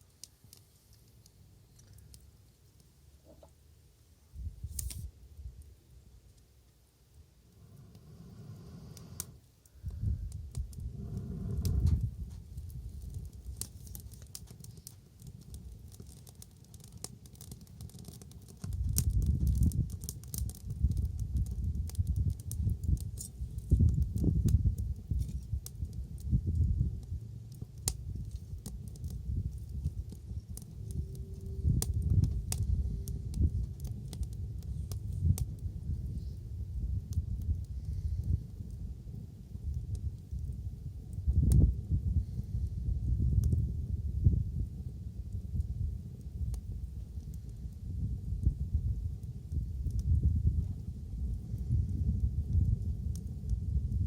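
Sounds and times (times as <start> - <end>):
wood fire crackling and popping: 0.0 - 3.5, 4.4 - 54.0
low rumble: 7.4 - 13.0, 26.2 - 37.5.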